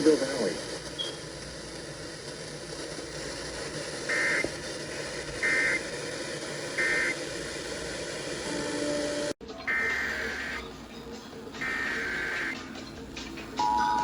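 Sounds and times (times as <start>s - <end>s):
buzzy digital data tones: 4.0s - 4.5s, 5.4s - 5.9s, 6.7s - 7.2s, 8.9s - 10.7s, 11.5s - 12.6s.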